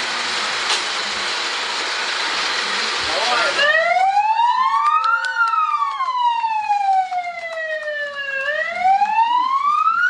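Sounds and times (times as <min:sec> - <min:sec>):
siren wailing: 0:03.3 - 0:10.0.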